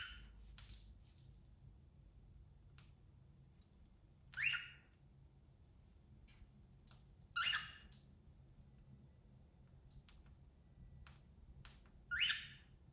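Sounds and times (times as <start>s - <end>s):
cockatiel calls: 0.0s - 0.3s, 4.3s - 4.9s, 7.3s - 8.0s, 12.1s - 12.7s.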